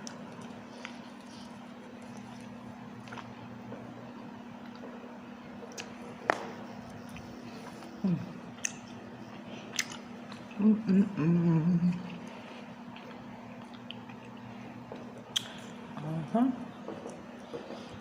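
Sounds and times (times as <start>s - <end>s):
chewing with mouth smacks: 0.0s - 10.6s, 11.8s - 16.0s
steady low hum: 0.0s - 18.0s
person humming: 8.0s - 8.5s, 10.6s - 12.3s.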